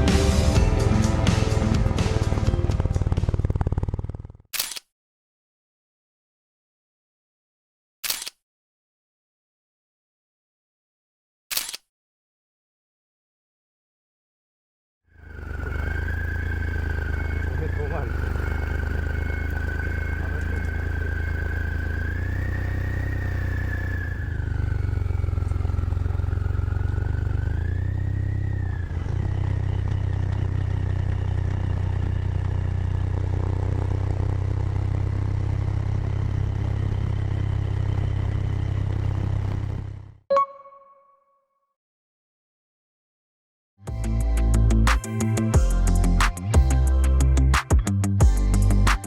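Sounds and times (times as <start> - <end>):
motorcycle engine running: 0.0 - 4.5, 15.2 - 40.2, 43.9 - 49.0
high wavering whistle: 40.3 - 41.3.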